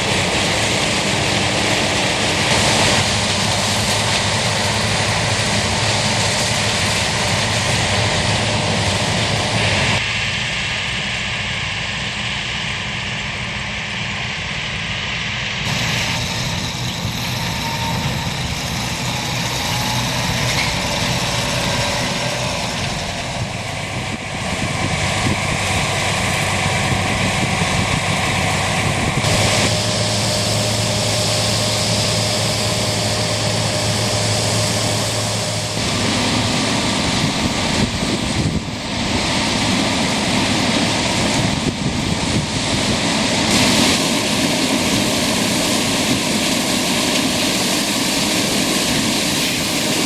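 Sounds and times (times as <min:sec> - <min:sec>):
diesel machinery running: 0:00.0 - 0:50.0.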